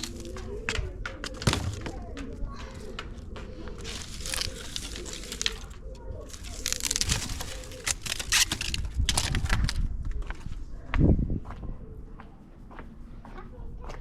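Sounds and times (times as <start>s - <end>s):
trash crackling and rustling: 0.0s - 10.0s
wind buffeting microphone: 0.0s - 12.6s.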